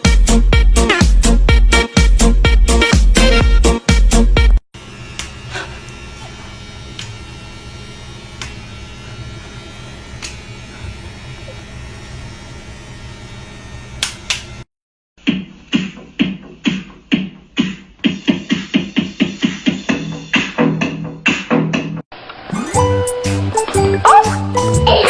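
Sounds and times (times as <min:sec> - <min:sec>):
electronic dance music: 0:00.0 - 0:04.6, 0:15.3 - 0:21.9.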